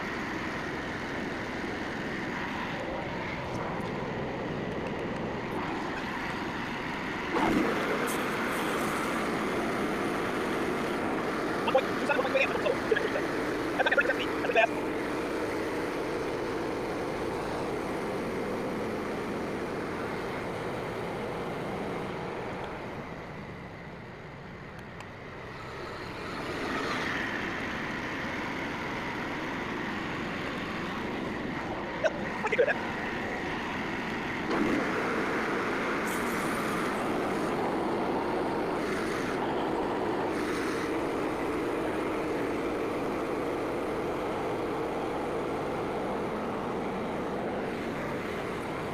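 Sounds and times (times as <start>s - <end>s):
small gasoline engine running: 34.5s - 48.9s.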